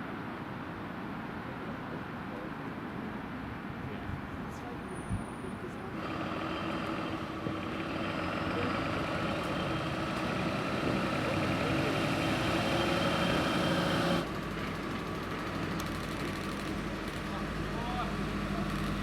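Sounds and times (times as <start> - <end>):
heavy vehicle engine running: 5.8 - 19.0.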